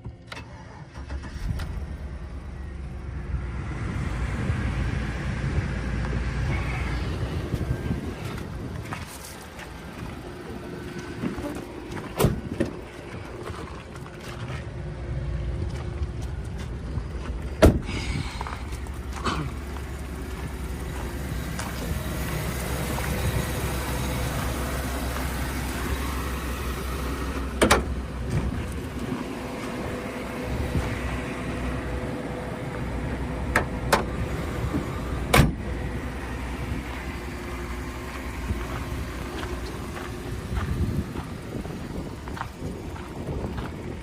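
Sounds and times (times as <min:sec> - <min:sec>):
car engine idling: 0:00.0 - 0:44.0.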